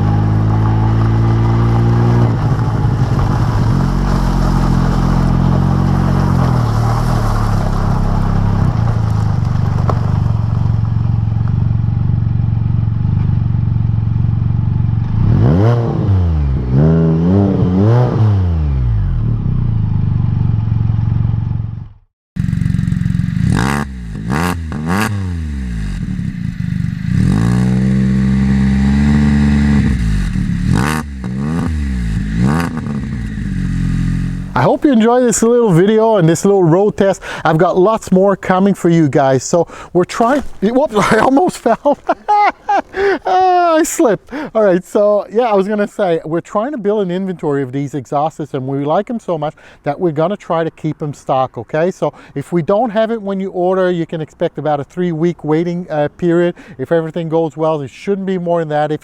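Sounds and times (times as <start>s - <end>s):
three-cylinder engine revving: 0.0s - 36.2s.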